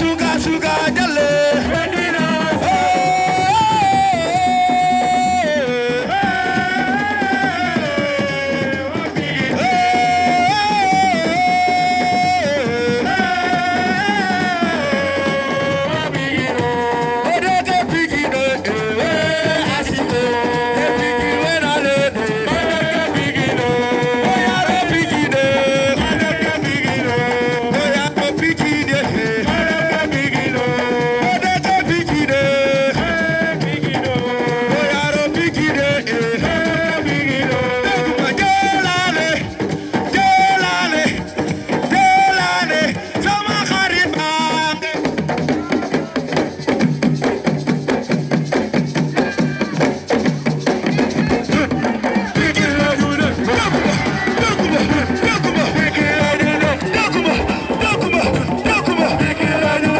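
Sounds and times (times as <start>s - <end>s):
steady percussion: 0.0s - 59.9s
busy musical accompaniment: 49.9s - 59.9s.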